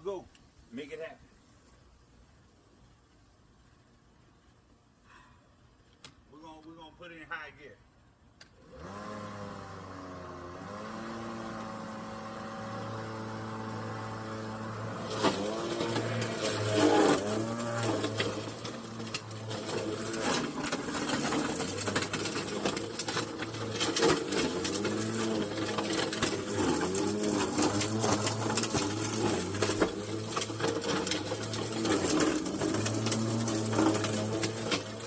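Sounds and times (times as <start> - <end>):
lawn mower motor and blade: 8.6 - 35.0
debris cracking against mower deck: 8.8 - 35.0.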